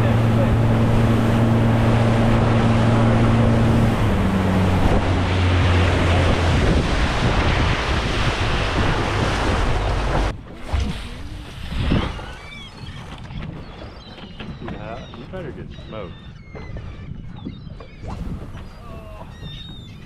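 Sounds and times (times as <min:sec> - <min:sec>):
water rushing: 0:00.0 - 0:13.2
boat engine running: 0:00.0 - 0:20.0
wind rushing: 0:00.6 - 0:12.4.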